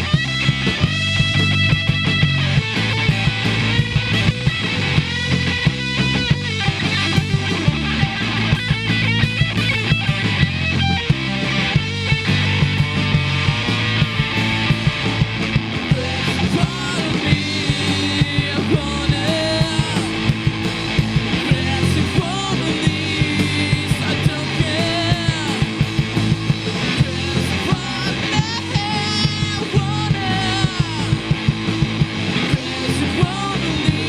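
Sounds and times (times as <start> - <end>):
bass guitar: 0.0 - 34.0
drums: 0.0 - 34.0
electric guitar: 0.0 - 34.0
person singing: 15.9 - 20.2, 21.4 - 25.8, 26.8 - 31.3, 32.4 - 34.0.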